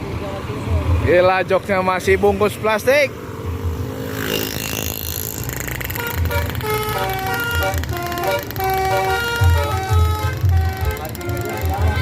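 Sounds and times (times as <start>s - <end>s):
diesel engine rumble: 4.9s - 12.0s
musical air horn tune: 6.0s - 12.0s.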